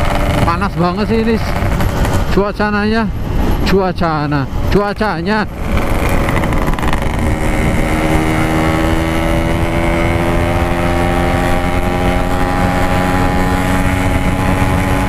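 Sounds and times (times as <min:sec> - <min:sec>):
motorcycle engine at high revs: 0:00.0 - 0:02.4, 0:05.4 - 0:15.0
wind buffeting rumble: 0:00.0 - 0:15.0.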